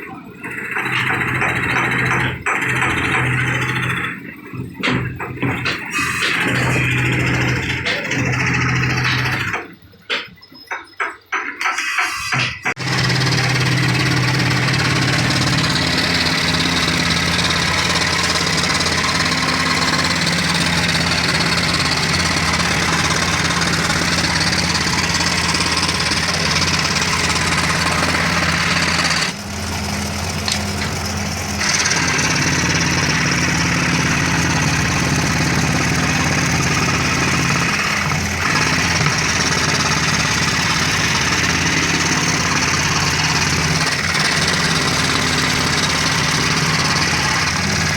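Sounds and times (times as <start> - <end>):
power tool cutting wood: 0.5 - 4.2, 4.8 - 9.7, 11.7 - 47.9.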